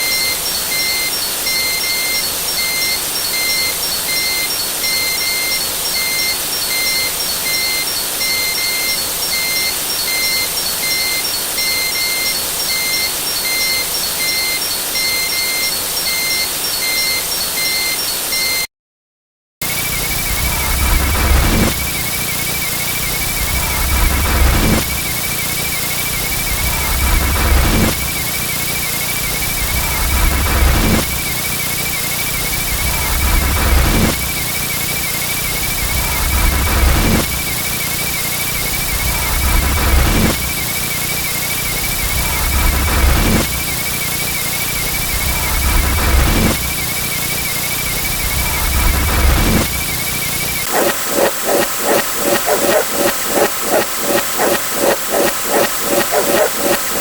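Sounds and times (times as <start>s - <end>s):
warbling high whine: 19.6s - 57.0s.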